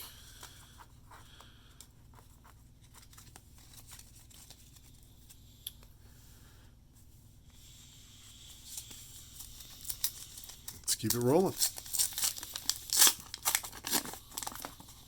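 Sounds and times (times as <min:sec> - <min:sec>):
cards and foil wrapper rustling: 0:02.3 - 0:05.4, 0:08.6 - 0:15.0.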